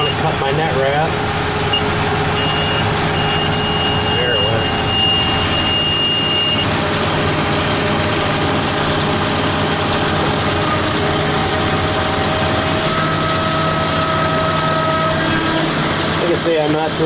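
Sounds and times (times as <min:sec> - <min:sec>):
tractor diesel engine running: 0:00.0 - 0:17.0
high electronic beep: 0:01.7 - 0:06.7.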